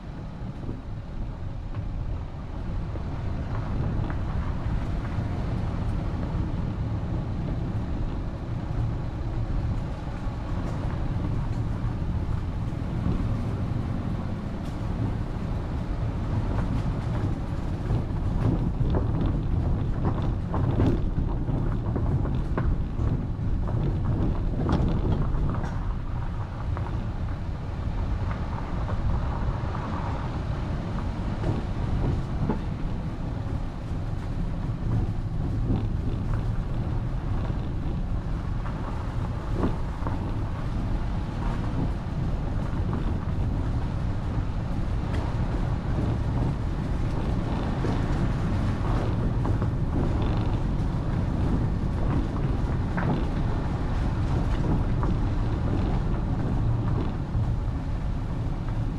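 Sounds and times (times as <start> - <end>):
vehicle engine and road rumble: 0.0 - 58.9.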